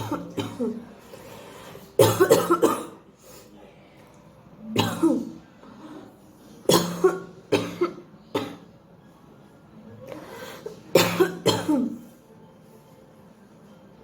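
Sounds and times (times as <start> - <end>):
woman coughing: 0.0 - 0.8, 2.0 - 3.0, 4.8 - 5.3, 6.7 - 8.6, 11.0 - 12.0.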